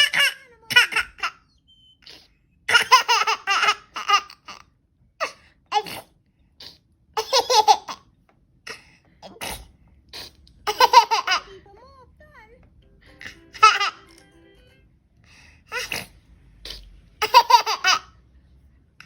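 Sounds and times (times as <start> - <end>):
young child laughing: 10.6 - 11.5, 17.2 - 18.1.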